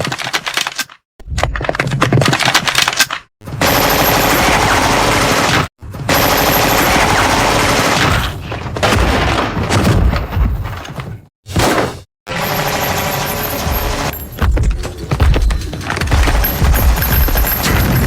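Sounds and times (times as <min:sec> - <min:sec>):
rapid-fire sci-fi gun shots: 0:03.6 - 0:09.5.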